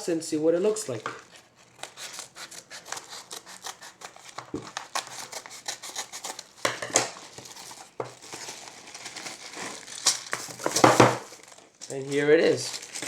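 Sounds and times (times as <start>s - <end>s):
packaging crinkling and rustling: 0.8s - 13.0s
sharp knocks or rips: 9.1s - 11.6s.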